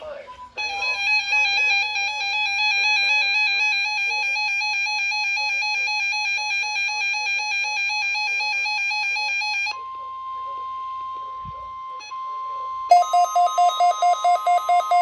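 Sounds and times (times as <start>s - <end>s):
warbling electronic alert tone: 12.9s - 15.0s.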